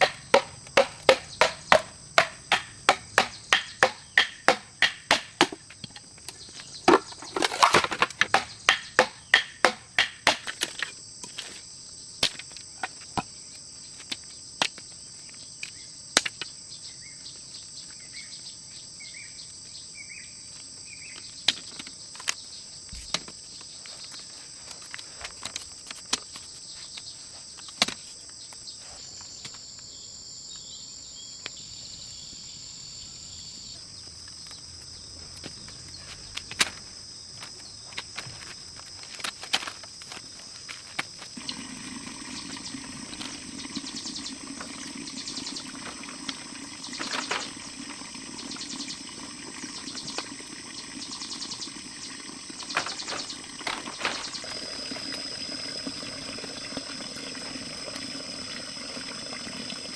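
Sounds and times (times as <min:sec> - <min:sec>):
sharp knocks and clicks: 0:00.0 - 0:06.1, 0:06.9 - 0:10.9, 0:52.6 - 0:54.6
insects chirring: 0:00.0 - 0:59.9.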